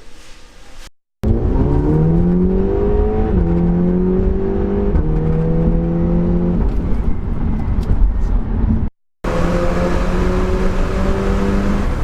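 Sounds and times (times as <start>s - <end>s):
car engine accelerating: 1.2s - 6.8s, 9.3s - 12.0s.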